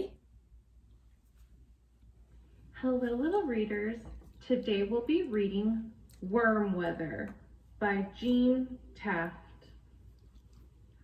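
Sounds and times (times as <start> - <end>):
faint low hum: 0.0 - 11.0
woman's voice: 2.8 - 9.6.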